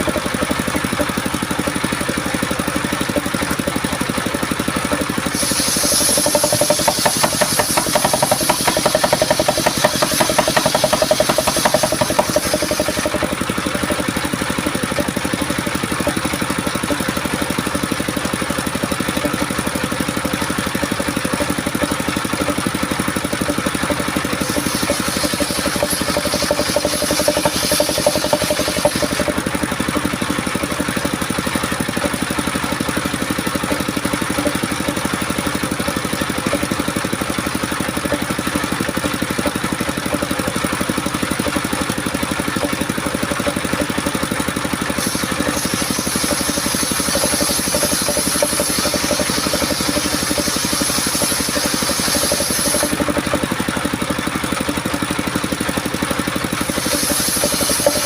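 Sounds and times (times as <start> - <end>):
sawmill engine running: 0.0 - 58.0
saw blade hissing through wood: 4.8 - 15.5, 23.2 - 36.4, 43.6 - 53.9, 56.4 - 58.0.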